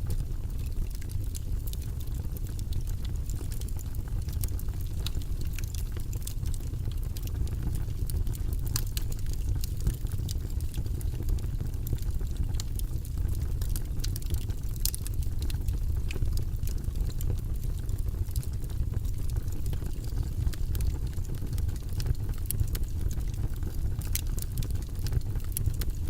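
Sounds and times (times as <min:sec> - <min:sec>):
wood fire crackling and popping: 0:00.0 - 0:26.0.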